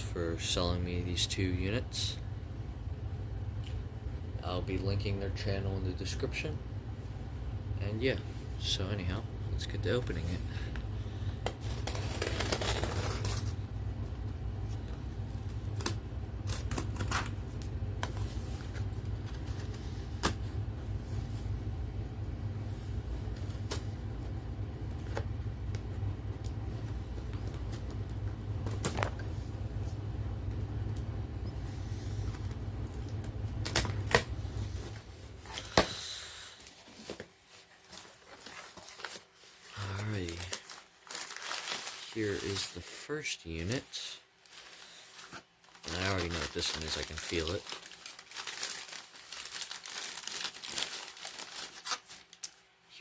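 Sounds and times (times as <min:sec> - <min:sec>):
steady low hum: 0:00.0 - 0:52.0
package being opened by hand: 0:11.4 - 0:13.6, 0:36.6 - 0:42.6, 0:44.4 - 0:52.7.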